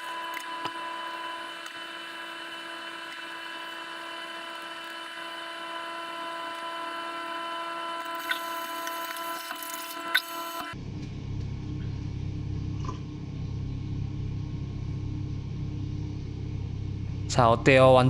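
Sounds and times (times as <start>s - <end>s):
small electric motor whining: 0.0s - 10.8s.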